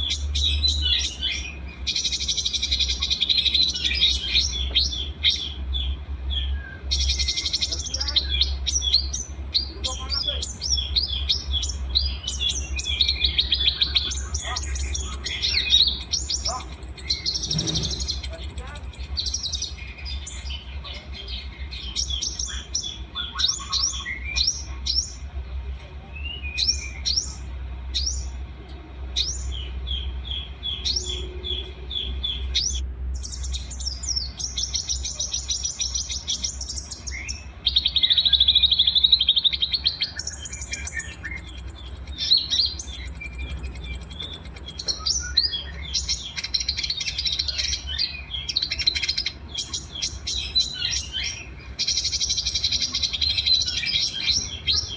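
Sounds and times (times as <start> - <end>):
songbirds singing: 0.0 - 54.9
steady low hum: 0.0 - 54.9.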